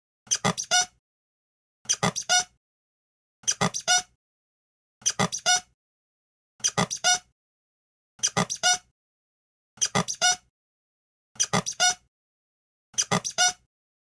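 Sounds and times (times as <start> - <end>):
cartoon head-scratching effect: 0.3 - 0.9, 1.9 - 2.5, 3.4 - 4.1, 5.0 - 5.7, 6.6 - 7.3, 8.2 - 8.9, 9.8 - 10.4, 11.4 - 12.0, 13.0 - 13.6.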